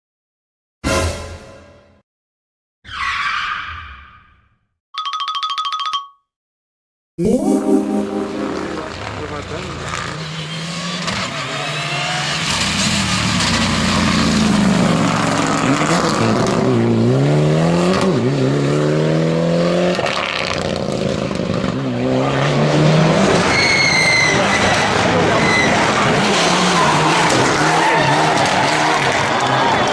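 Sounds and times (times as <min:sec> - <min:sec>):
rally car engine accelerating: 0:08.2 - 0:29.9
tyre squeal: 0:23.4 - 0:28.6.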